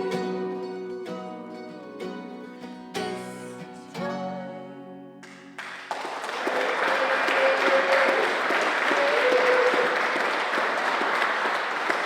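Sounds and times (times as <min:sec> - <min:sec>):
audience applauding: 0:05.2 - 0:12.0.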